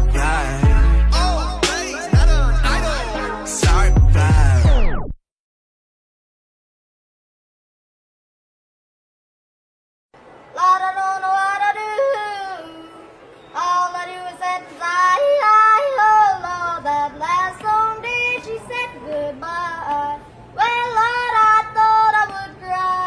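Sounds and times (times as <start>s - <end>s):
pitched-up singing voice: 0.0s - 5.1s, 10.5s - 23.0s.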